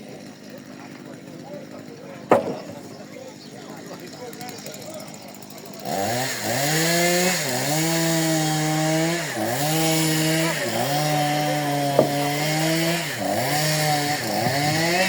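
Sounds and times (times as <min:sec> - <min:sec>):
chainsaw cutting wood: 0:00.0 - 0:15.0
sharp knock: 0:02.3 - 0:02.8.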